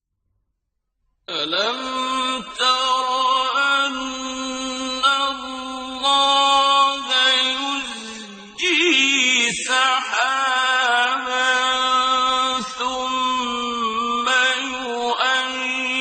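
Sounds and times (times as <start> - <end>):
man chanting: 1.3 - 16.0.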